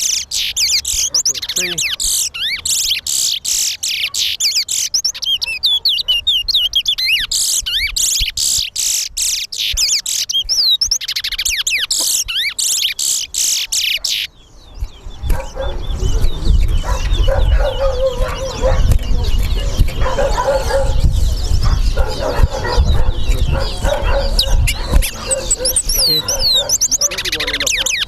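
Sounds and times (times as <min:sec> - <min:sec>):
finch singing whistled chirps: 0:00.0 - 0:28.0.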